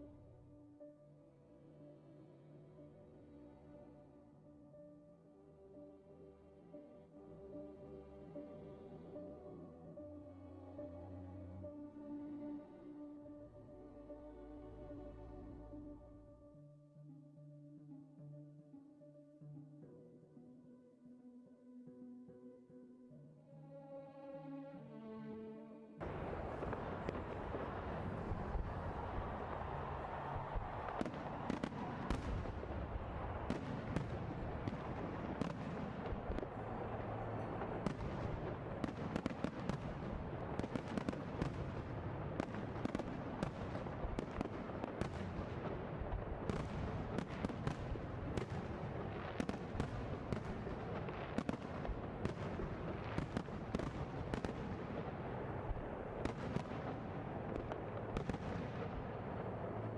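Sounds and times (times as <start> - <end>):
fireworks bangs and crackles: 26.0 - 59.9.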